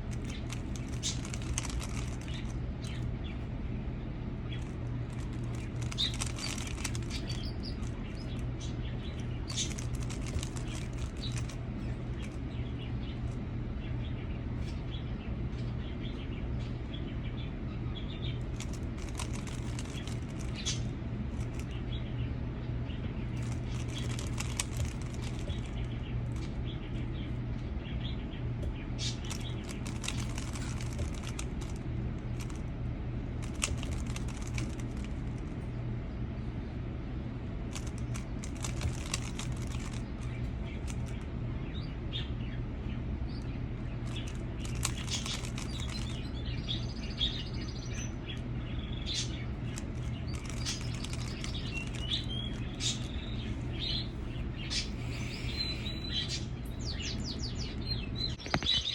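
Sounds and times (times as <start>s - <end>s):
puzzle cube plastic clicking: 0.1s - 2.5s, 4.6s - 7.9s, 9.5s - 11.6s, 18.6s - 20.8s, 23.4s - 25.7s, 29.2s - 31.8s, 33.4s - 35.2s, 37.7s - 40.0s, 44.1s - 46.2s, 49.8s - 52.2s.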